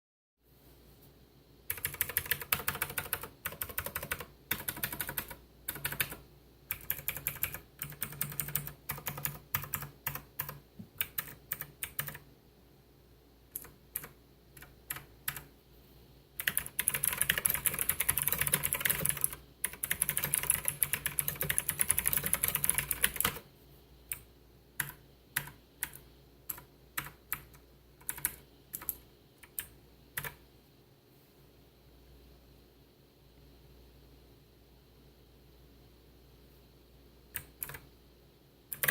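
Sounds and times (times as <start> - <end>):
mechanical keyboard typing: 1.7 - 12.2, 13.5 - 15.5, 16.4 - 23.4, 24.1 - 30.4, 37.3 - 37.8.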